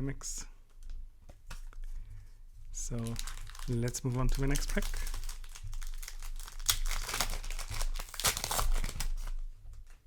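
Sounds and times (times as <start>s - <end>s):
wrapper tearing and crinkling: 2.9s - 9.5s.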